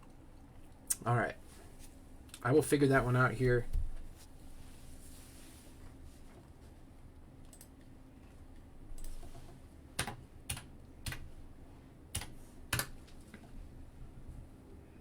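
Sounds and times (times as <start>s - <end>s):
computer keyboard key clicks: 7.4s - 7.8s, 12.1s - 13.0s.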